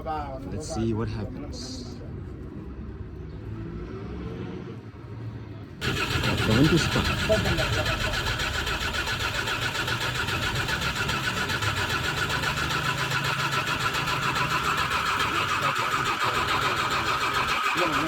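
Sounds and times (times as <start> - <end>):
diesel truck engine running: 5.8 - 18.0.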